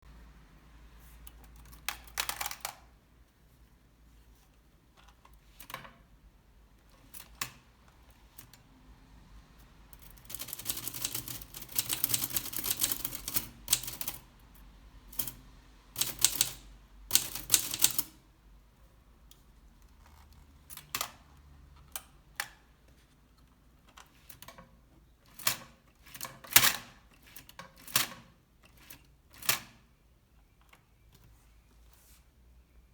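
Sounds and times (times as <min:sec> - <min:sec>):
typewriter keys clacking: 0:01.5 - 0:02.8, 0:10.0 - 0:14.3, 0:15.1 - 0:15.4, 0:16.0 - 0:18.2.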